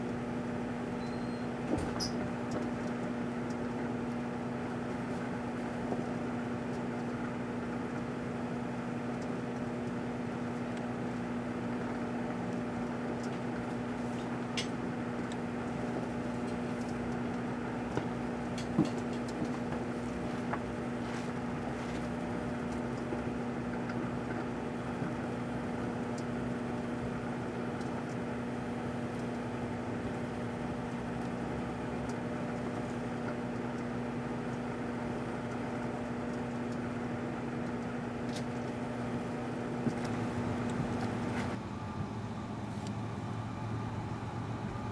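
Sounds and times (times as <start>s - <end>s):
microwave oven humming: 0.0s - 44.9s.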